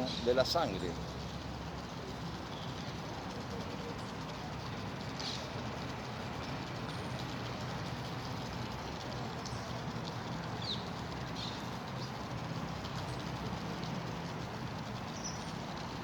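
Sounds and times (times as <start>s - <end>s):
running water: 0.0s - 16.0s.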